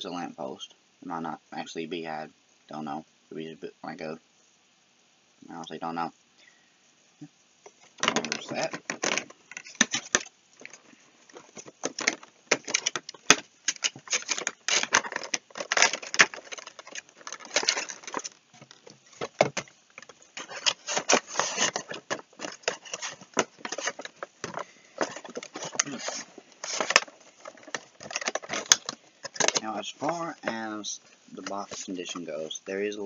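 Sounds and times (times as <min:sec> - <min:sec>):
packaging rustling and crinkling: 0:07.8 - 0:32.7.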